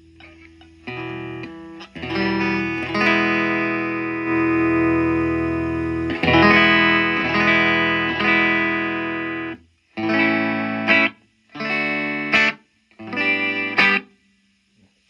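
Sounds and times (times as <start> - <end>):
overdriven electric guitar chords: 0.0 - 14.0.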